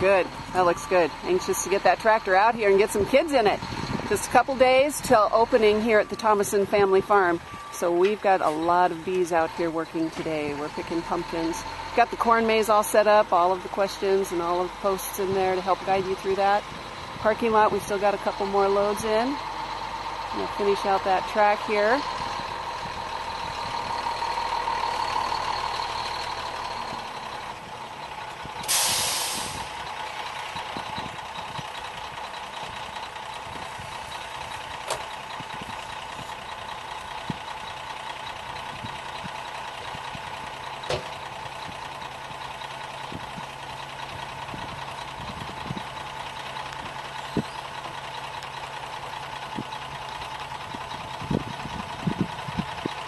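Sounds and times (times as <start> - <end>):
truck engine running: 0.0 - 53.0
hissing air burst: 28.6 - 29.8.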